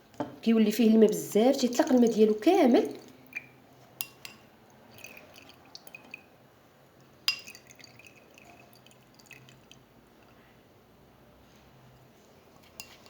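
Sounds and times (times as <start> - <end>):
liquid dripping: 1.6 - 6.4, 7.0 - 10.3.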